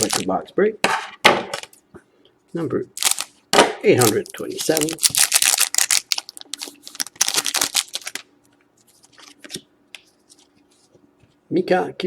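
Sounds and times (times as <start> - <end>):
cards rustling and clicking: 0.0 - 0.3, 4.0 - 8.2
wrapper tearing and crinkling: 0.0 - 0.3, 3.0 - 3.4, 4.0 - 8.3.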